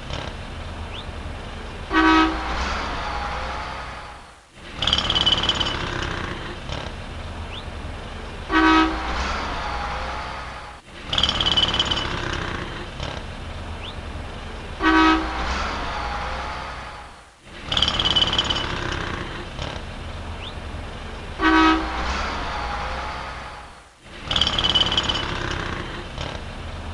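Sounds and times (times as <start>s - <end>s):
street traffic rumble: 0.0s - 26.9s
car horn honk: 1.9s - 3.9s, 8.5s - 10.4s, 14.8s - 16.8s, 21.4s - 23.6s.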